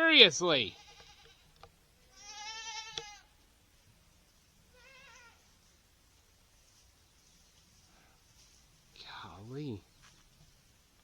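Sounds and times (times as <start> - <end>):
animals bleating: 0.6 - 1.5, 2.1 - 3.3.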